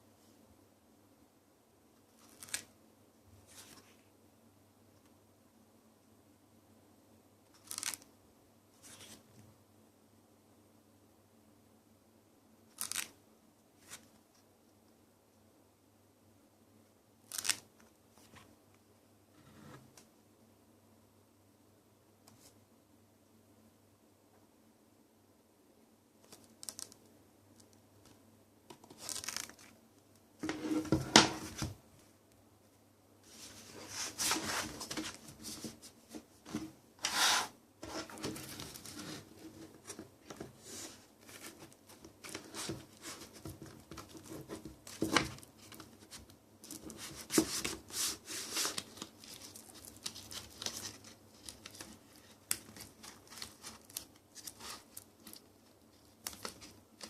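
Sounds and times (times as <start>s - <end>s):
paper and plastic rustling: 33.3s - 57.0s.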